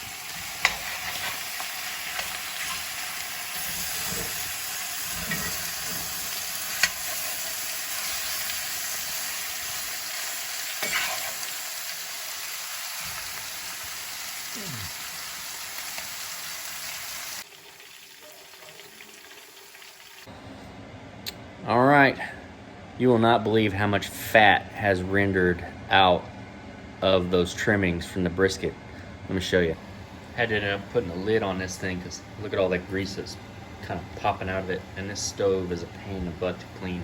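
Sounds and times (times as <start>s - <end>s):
fat sizzling in a skillet: 0.0s - 20.3s.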